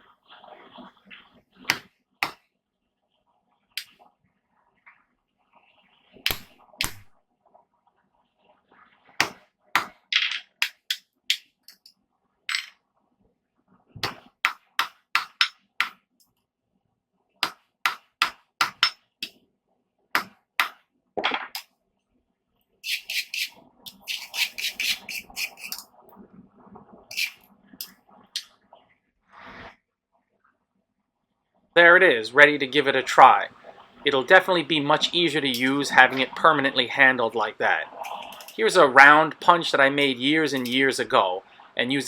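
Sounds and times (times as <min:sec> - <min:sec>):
hammer striking steel on anvil: 0:14.8 - 0:15.5.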